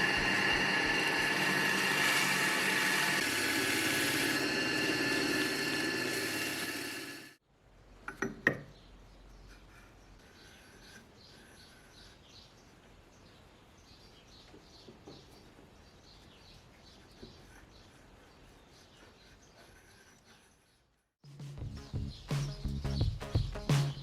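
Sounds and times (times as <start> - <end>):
power tool whining: 0.0 - 7.4.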